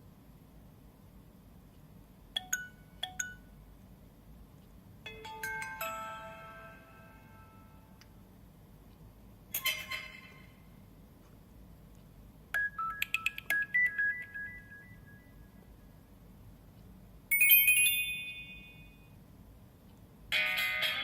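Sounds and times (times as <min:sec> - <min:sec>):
ringing chime: 0:05.1 - 0:08.0, 0:17.3 - 0:19.2.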